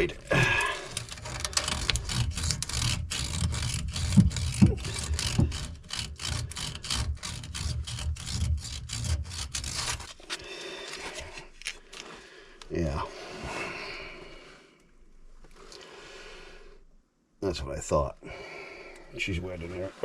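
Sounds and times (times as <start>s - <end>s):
scraping and knocking on pipe: 0.0s - 10.2s.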